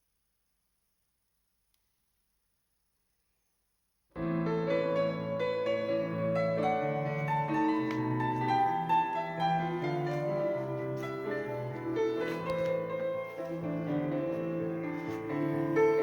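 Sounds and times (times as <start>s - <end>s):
classical piano music from a record: 4.2s - 16.0s.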